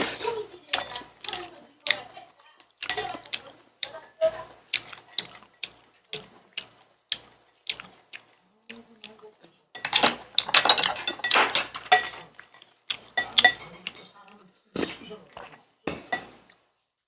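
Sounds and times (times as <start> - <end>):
tableware clattering: 0.0 - 1.5, 2.8 - 3.3, 9.8 - 14.2, 14.8 - 16.5
rustling: 0.0 - 2.3
utensils clicking on dishes: 0.0 - 16.6.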